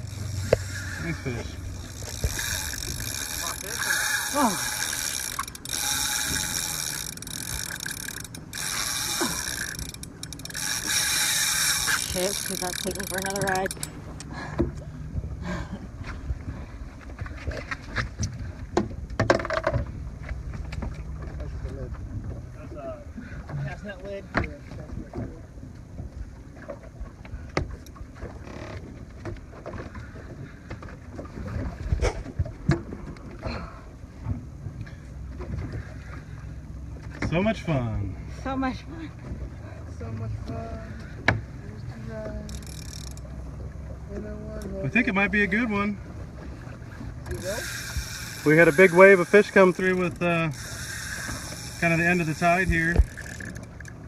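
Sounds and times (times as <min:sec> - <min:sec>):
fishing reel drag buzzing: 0:00.0 - 0:14.3, 0:42.4 - 0:43.4, 0:47.2 - 0:54.0.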